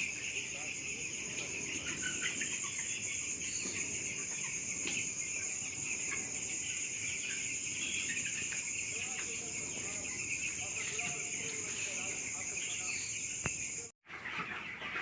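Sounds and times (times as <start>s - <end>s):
chickens chirping and clucking: 0.0s - 15.0s.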